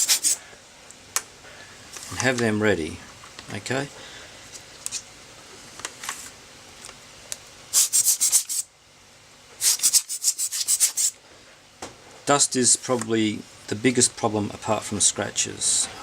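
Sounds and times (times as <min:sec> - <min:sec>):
brush bristles brushing: 0:09.6 - 0:11.1.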